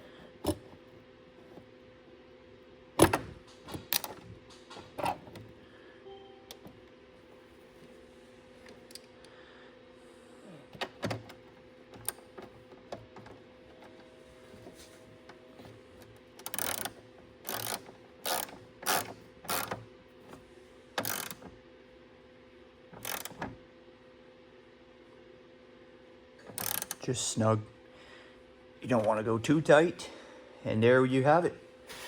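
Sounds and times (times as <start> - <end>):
ratchet clicking: 16.4 - 19.8, 21.0 - 21.4, 23.0 - 23.4, 26.5 - 27.0.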